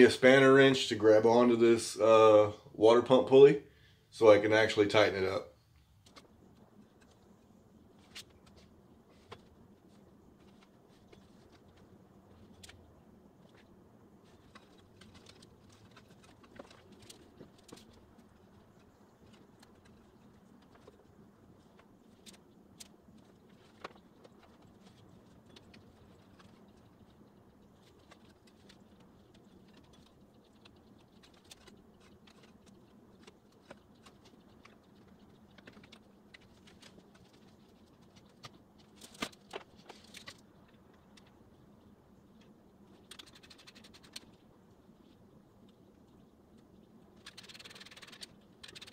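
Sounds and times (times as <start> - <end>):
quick run of ticks: 43.0 - 44.4, 46.6 - 48.9.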